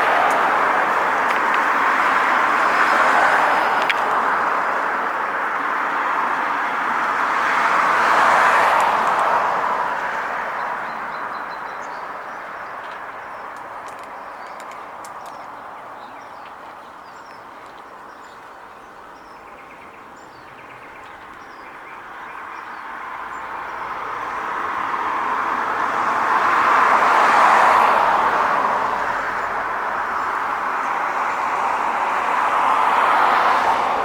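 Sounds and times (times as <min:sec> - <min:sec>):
vehicle approaching with road noise: 0:00.0 - 0:34.0
small birds chirping: 0:10.6 - 0:23.5.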